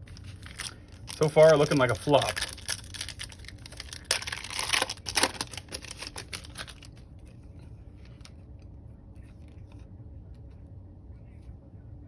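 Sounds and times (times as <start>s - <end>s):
wrapper and cards crinkling: 0.0s - 7.0s.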